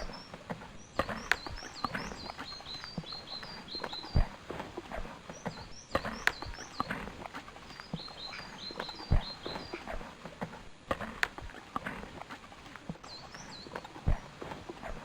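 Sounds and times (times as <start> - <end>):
high bird chirps: 0.0 - 4.3, 5.4 - 7.1, 7.7 - 9.8
irregular knocks and thuds: 0.0 - 15.0.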